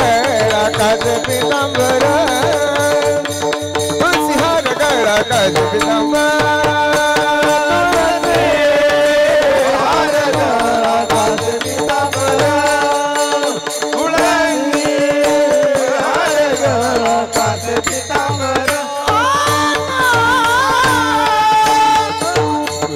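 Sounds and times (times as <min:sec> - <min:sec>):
person singing long ornamented notes: 0:00.0 - 0:22.9.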